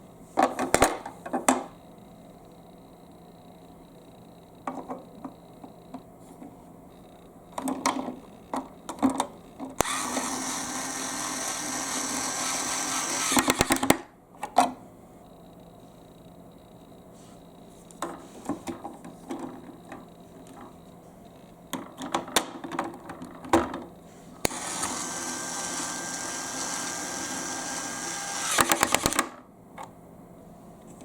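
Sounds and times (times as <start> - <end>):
electric drill running: 9.8 - 13.9, 24.4 - 29.3
plastic parts clicking and knocking: 21.7 - 23.9.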